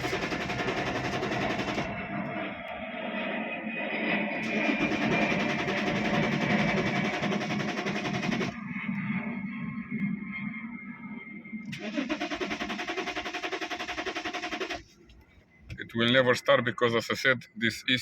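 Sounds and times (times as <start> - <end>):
diesel engine cranking on starter: 0.0 - 2.0, 4.4 - 8.6, 11.7 - 15.0.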